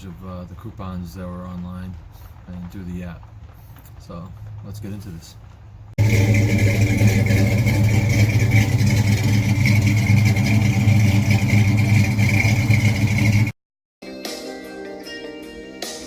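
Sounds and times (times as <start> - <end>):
loud engine running: 6.0 - 13.6.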